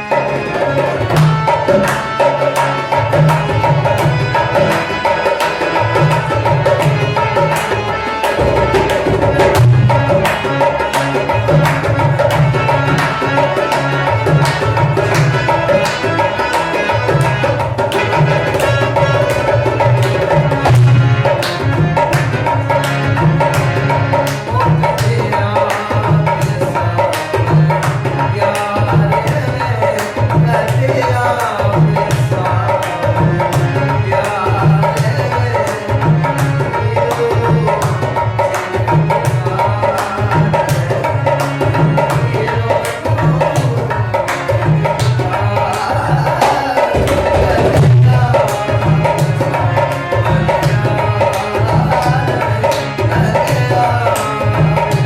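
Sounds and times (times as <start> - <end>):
sustained melody line: 0.0 - 25.5
hand drum rhythm: 0.0 - 55.0.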